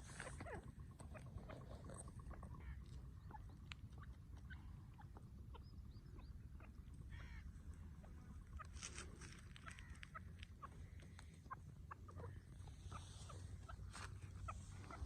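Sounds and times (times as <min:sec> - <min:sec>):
bird calls and chirps: 0:00.0 - 0:15.0
steady low rumble: 0:00.0 - 0:15.0.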